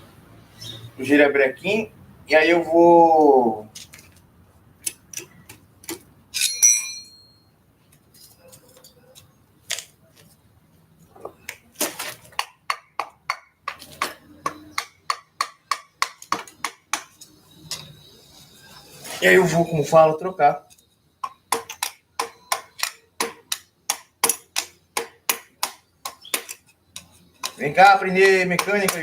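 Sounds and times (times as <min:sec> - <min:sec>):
metal tools clinking: 0:06.3 - 0:07.5.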